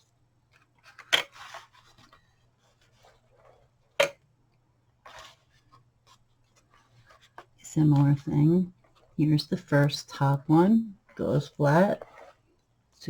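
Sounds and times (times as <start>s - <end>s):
paper rustling and sliding: 5.0s - 7.5s.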